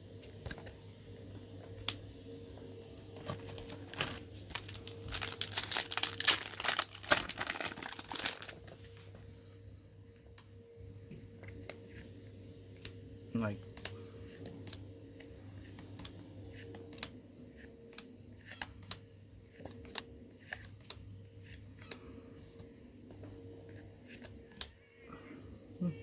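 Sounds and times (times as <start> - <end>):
foil wrapper tearing and crinkling: 3.2 - 8.8.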